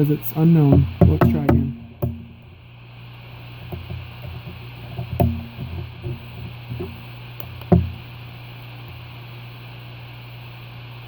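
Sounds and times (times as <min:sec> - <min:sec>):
steady low hum: 0:00.0 - 0:11.0
light knocks and clicks: 0:03.6 - 0:08.1.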